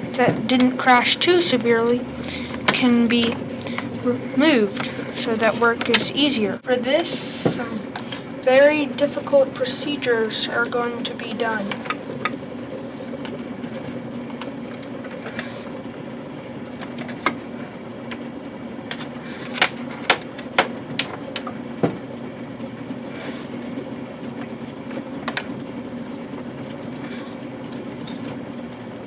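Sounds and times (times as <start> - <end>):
sharp clicks and knocks: 5.5 - 6.3, 18.9 - 22.6.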